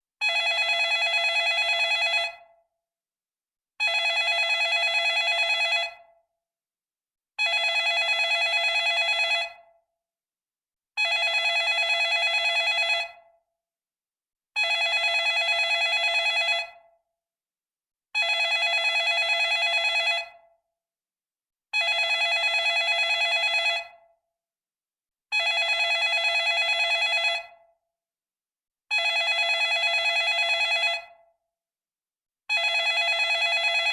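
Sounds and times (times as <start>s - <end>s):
telephone bell ringing: 0.2s - 2.5s, 3.8s - 6.1s, 7.4s - 9.7s, 11.0s - 13.3s, 14.6s - 16.9s, 18.2s - 20.5s, 21.8s - 24.0s, 25.3s - 27.6s, 28.9s - 31.2s, 32.5s - 33.9s.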